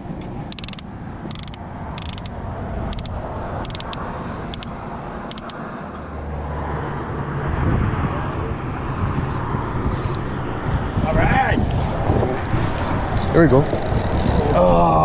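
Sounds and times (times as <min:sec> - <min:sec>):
low vehicle engine hum: 0:00.0 - 0:15.0
traffic tyres and wind rushing: 0:00.0 - 0:15.0
short bursts of high clicking: 0:00.5 - 0:02.3, 0:02.9 - 0:05.6.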